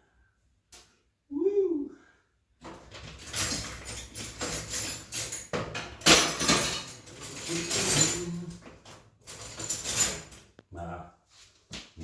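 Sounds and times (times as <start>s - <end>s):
hard objects clattering: 2.6s - 10.4s.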